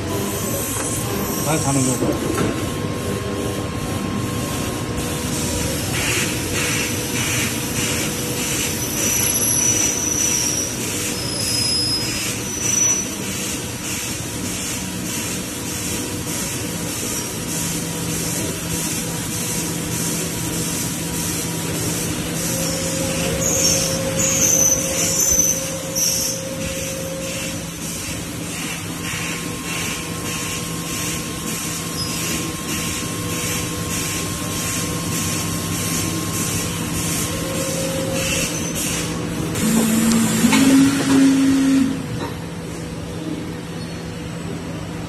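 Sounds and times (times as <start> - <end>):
short high squeals: 8.8 - 13.2, 22.5 - 27.5.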